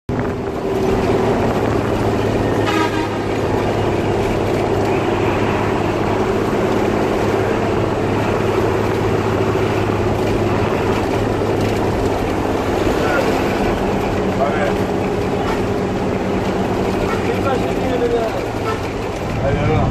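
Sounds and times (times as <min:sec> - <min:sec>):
bus diesel engine running: 0:00.1 - 0:19.9
horn toot: 0:02.4 - 0:03.9.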